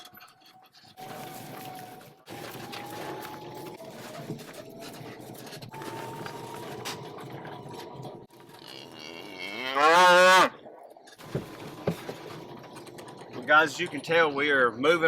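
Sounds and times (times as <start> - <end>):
cow mooing: 8.6 - 10.6.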